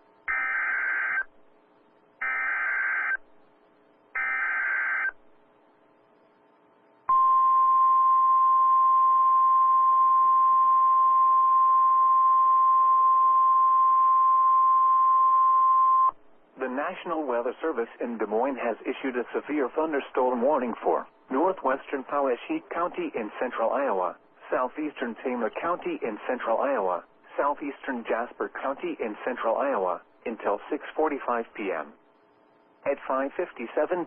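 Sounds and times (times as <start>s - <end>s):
buzzy data tone bursts: 0.3s - 1.3s, 2.2s - 3.2s, 4.2s - 5.2s
steady warning alarm tone: 0.3s - 1.3s, 2.2s - 3.2s, 4.2s - 5.2s.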